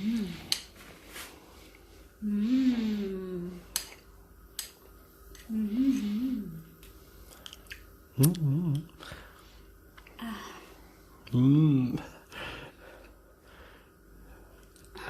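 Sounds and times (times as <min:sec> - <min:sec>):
person humming mmm: 0:00.0 - 0:00.6, 0:02.2 - 0:03.9, 0:05.4 - 0:06.8, 0:08.2 - 0:09.1, 0:10.0 - 0:12.2.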